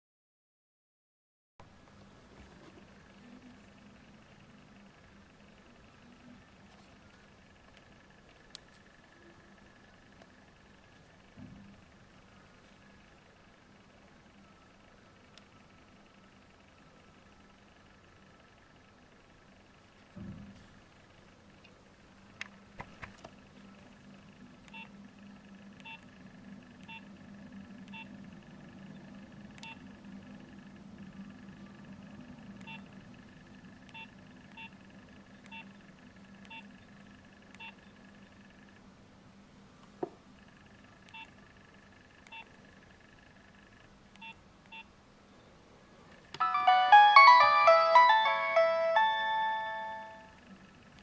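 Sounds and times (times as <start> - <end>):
faint low hum: 1.6 - 51.0
polyphonic ringtone melody: 46.4 - 50.4.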